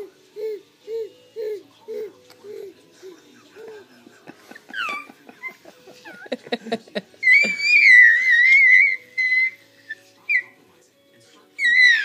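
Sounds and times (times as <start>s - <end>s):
baby squealing: 7.2s - 10.5s, 11.6s - 12.0s.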